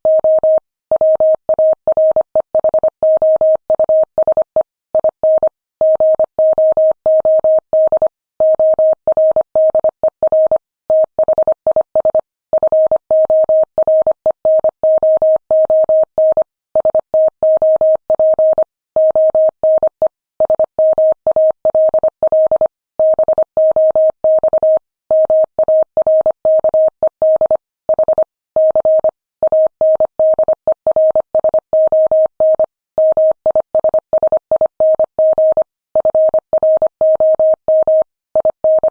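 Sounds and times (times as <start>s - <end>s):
morse code tone pulses: 18.3s - 38.9s.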